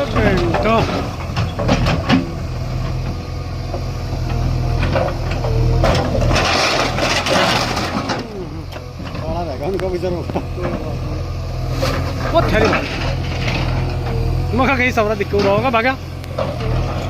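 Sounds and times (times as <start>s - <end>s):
bulldozer diesel engine drone: 0.0s - 17.0s.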